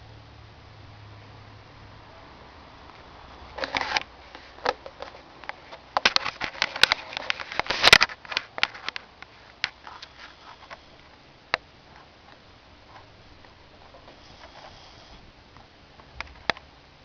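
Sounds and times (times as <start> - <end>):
snoring snorts and clicks: 14.0 - 15.2.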